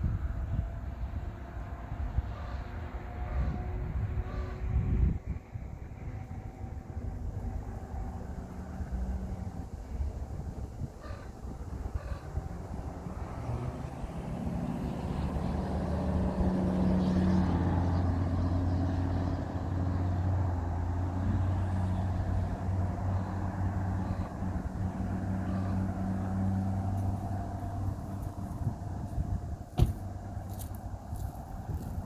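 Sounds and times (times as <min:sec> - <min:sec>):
vehicle engine running: 0:11.5 - 0:32.0.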